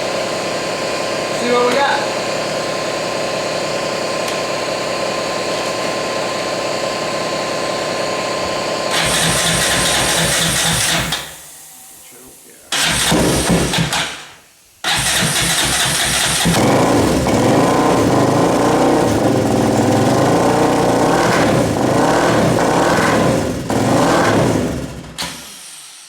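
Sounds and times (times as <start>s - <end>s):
quad engine revving: 8.9s - 11.3s, 12.7s - 14.0s, 14.9s - 25.2s.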